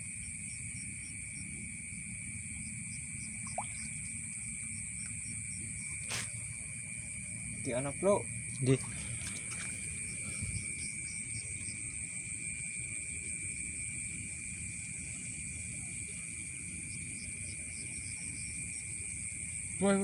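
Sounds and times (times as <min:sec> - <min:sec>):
insects trilling: 0:00.0 - 0:20.0
faint chirps: 0:03.2 - 0:06.7.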